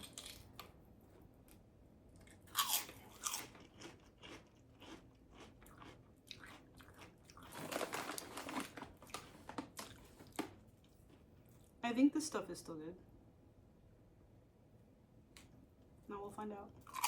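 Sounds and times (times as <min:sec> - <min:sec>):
crunchy food chewing: 0:02.2 - 0:11.8.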